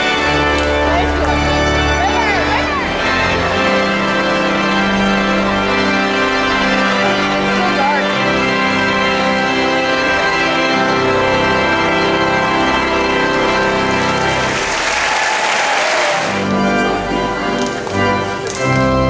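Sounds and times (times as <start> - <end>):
organ playing held chords: 0.0 - 19.0
applause: 13.9 - 16.5.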